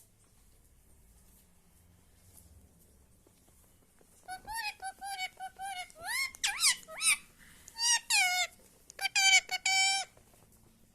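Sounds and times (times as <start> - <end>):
parrot squawking and talking: 4.2 - 10.2.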